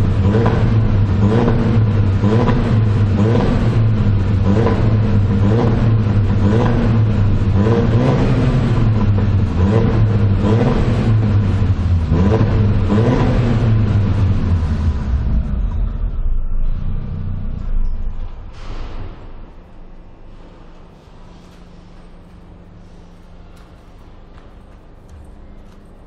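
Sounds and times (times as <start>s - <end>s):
car engine revving: 0.0s - 24.1s.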